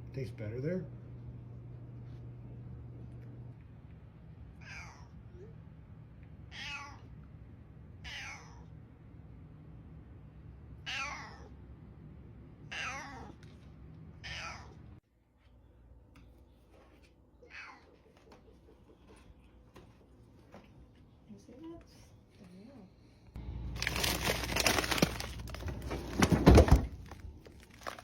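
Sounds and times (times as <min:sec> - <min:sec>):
cat meowing: 0:04.6 - 0:05.5, 0:06.5 - 0:07.1, 0:08.0 - 0:08.7, 0:10.8 - 0:11.5, 0:12.7 - 0:13.4, 0:14.2 - 0:14.8
steady low hum: 0:19.2 - 0:27.7.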